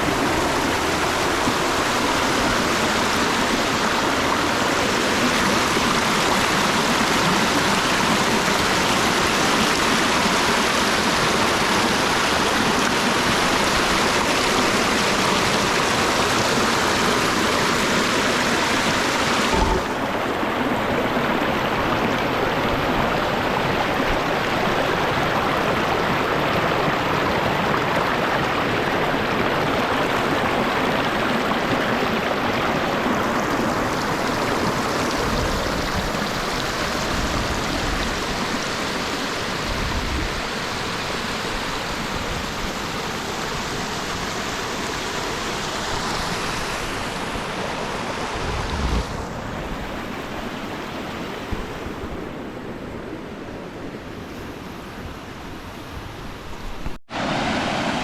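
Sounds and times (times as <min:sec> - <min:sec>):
waterfall rushing: 0:00.0 - 0:53.1, 0:54.0 - 0:58.0
brief low bump: 0:19.5 - 0:20.2.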